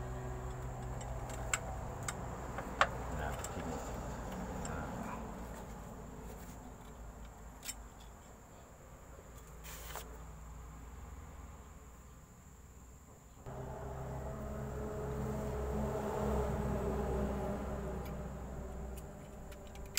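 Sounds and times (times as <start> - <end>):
low engine-like hum: 0.0 - 8.7, 13.4 - 19.9
high electrical whine: 13.5 - 19.9
small metal parts clicking: 19.0 - 19.9.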